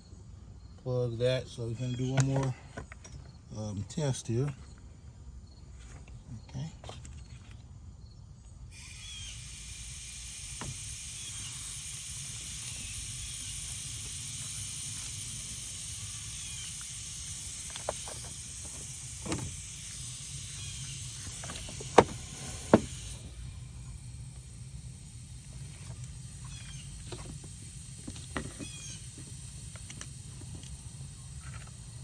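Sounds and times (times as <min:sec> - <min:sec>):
compressed air hissing: 0:08.7 - 0:32.0
sharp clicks and knocks: 0:17.6 - 0:23.0, 0:25.4 - 0:31.8.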